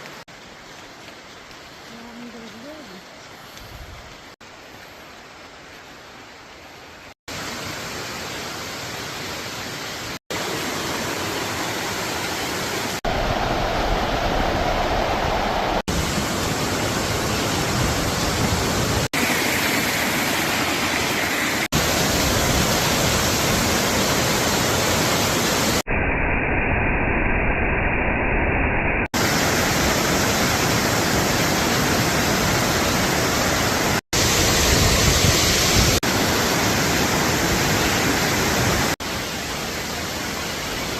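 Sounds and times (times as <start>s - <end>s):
waterfall rushing: 7.3s - 25.8s, 29.2s - 40.9s.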